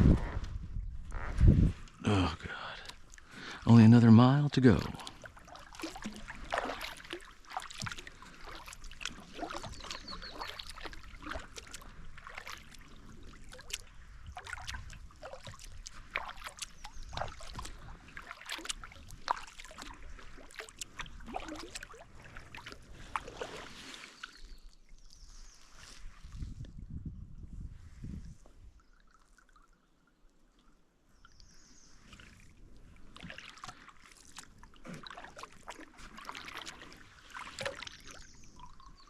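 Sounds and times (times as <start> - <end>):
paddle splashing in water: 4.6 - 26.4, 31.5 - 39.0
water dripping: 37.6 - 39.0.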